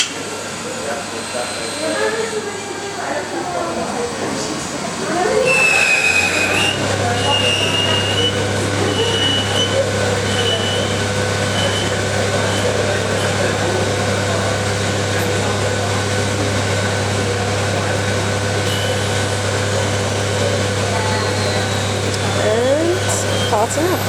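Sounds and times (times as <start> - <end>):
lathe motor hum: 0.2 - 24.0
short high squeals: 5.4 - 12.7.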